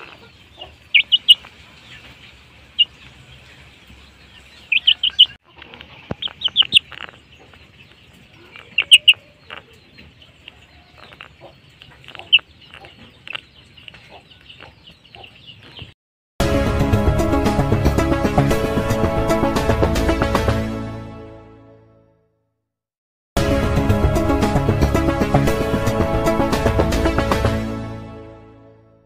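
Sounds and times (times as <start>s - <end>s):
chickens chirping and peeping: 0.0s - 16.0s.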